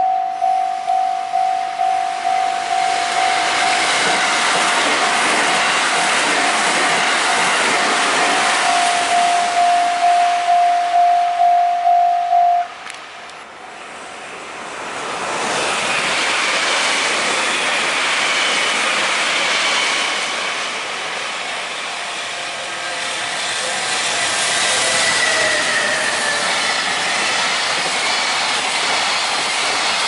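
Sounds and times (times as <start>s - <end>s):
level crossing warning bell: 0.0s - 5.5s, 7.2s - 12.7s
train wheels rushing on rail: 0.4s - 11.6s, 12.7s - 30.0s.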